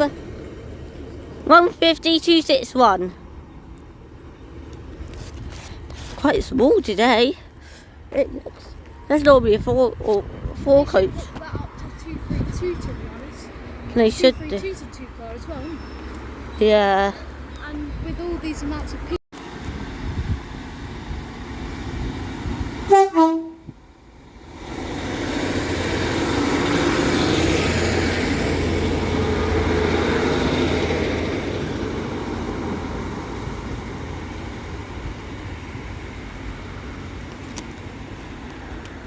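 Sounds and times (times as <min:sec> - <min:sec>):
diesel engines and wheels rumbling: 0:00.0 - 0:39.0
train two-note horn: 0:22.8 - 0:23.8.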